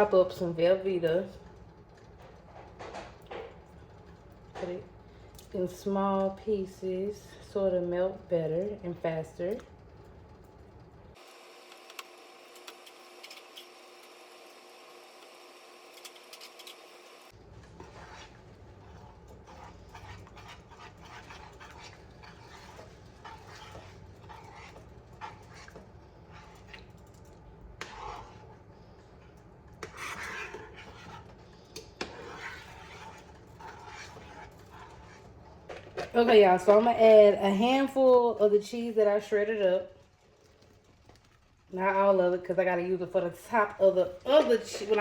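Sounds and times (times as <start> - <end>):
quiet steady hum: 17.3 - 45.0
kitchen utensils scraping and knocking: 17.6 - 38.1, 43.5 - 45.0.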